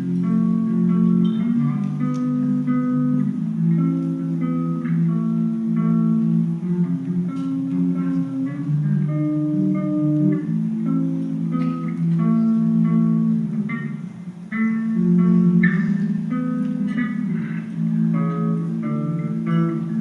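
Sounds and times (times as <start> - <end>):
guitar playing melodic licks: 0.0 - 20.0.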